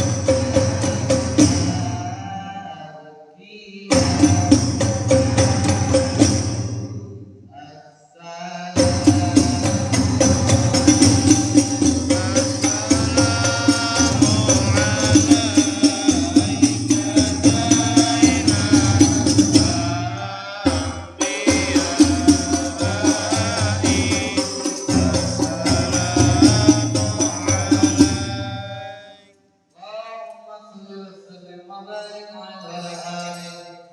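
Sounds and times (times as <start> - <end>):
frame drums with jingles: 0.0 - 2.6, 3.9 - 7.2, 8.8 - 29.0
voices singing devotional chant: 0.0 - 30.0.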